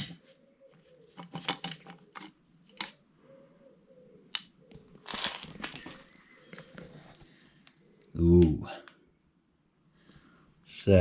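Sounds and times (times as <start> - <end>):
tools clicking and knocking: 1.2 - 2.9.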